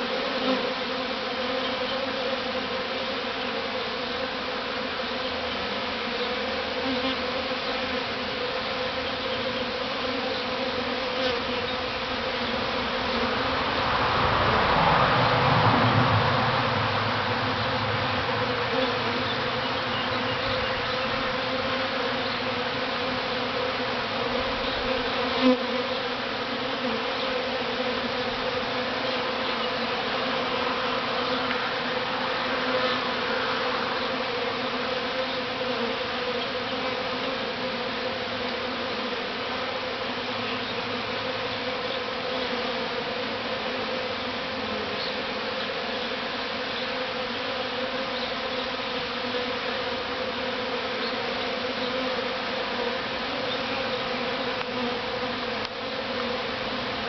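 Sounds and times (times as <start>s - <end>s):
bee swarm buzzing: 0.0s - 57.0s.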